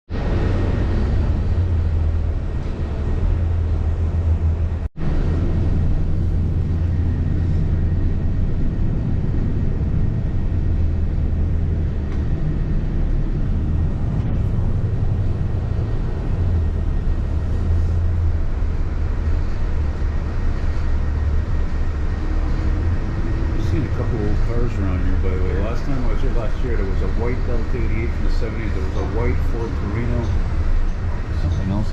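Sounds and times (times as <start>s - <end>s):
bus engine drone: 0.1s - 31.9s
road noise rumble: 0.1s - 31.9s.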